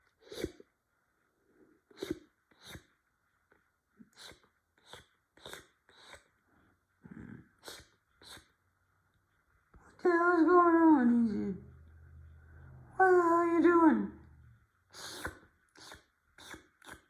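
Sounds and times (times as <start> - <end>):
cat licking fur: 7.6 - 8.4, 15.0 - 17.0.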